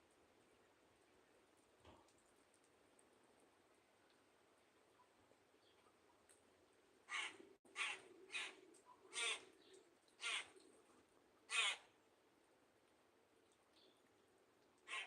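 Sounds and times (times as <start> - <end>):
bird giving harsh raspy calls: 7.1 - 9.4, 10.2 - 10.5, 11.5 - 11.8.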